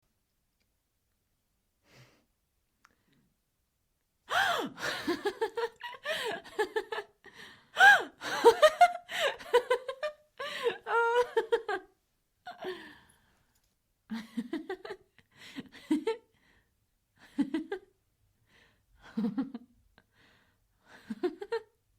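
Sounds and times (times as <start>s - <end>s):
woman giggling and laughing: 4.3s - 12.8s, 14.1s - 16.3s, 17.2s - 17.9s, 19.0s - 19.8s, 20.9s - 21.8s.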